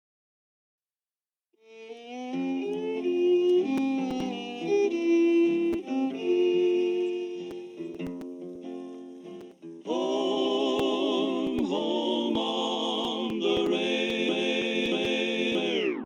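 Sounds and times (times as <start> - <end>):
plucked-string notes: 1.9 - 15.6
sustained choir-like chords: 2.5 - 8.1, 8.9 - 16.0.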